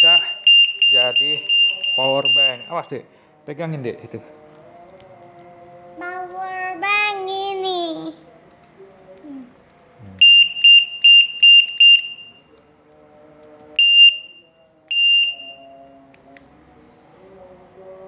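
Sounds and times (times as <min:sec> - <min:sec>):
high-pitched electronic bicycle horn beeps: 0:00.0 - 0:02.9, 0:10.2 - 0:12.4, 0:13.8 - 0:15.7.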